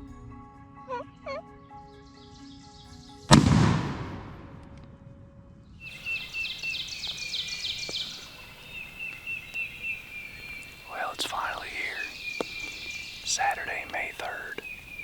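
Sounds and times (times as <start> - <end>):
loud bang: 3.3 - 5.2.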